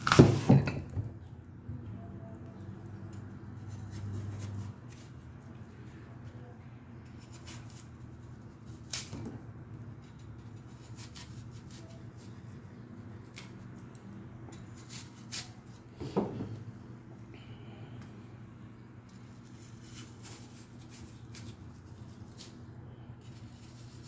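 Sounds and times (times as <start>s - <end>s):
low steady hum: 0.0s - 24.0s
light kitchen knocks and rustles: 16.0s - 16.7s.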